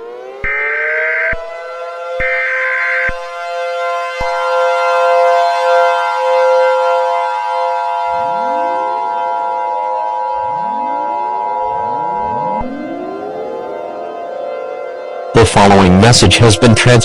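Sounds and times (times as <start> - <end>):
rising siren wails: 0.0 - 17.0
synthetic alert tones: 8.1 - 14.4.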